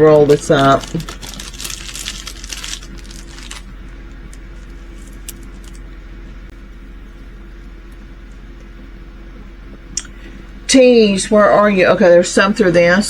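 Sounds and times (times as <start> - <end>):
faint steady hum: 0.0 - 13.0
small plastic beads rattling in bag: 0.2 - 3.7, 4.6 - 5.8.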